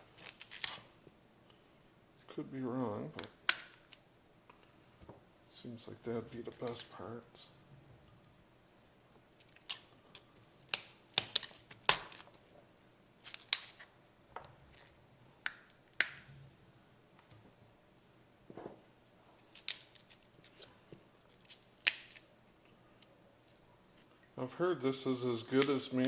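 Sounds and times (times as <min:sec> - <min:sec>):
cauliflower snapping: 0:10.7 - 0:12.3, 0:21.4 - 0:22.2.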